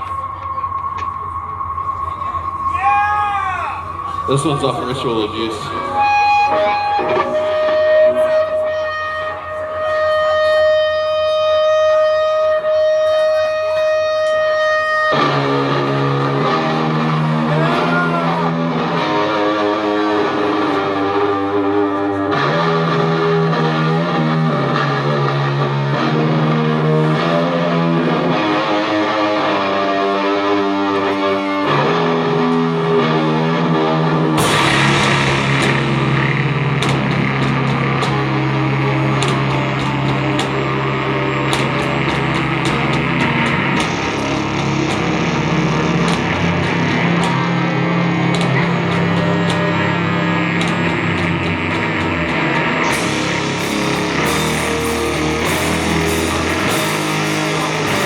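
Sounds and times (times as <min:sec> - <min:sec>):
distorted guitar note ringing: 0:00.0 - 0:58.0
doom metal band playing live: 0:00.0 - 0:58.0
heavy guitar riff: 0:00.0 - 0:58.0
bright crashing noise: 0:34.4 - 0:58.0.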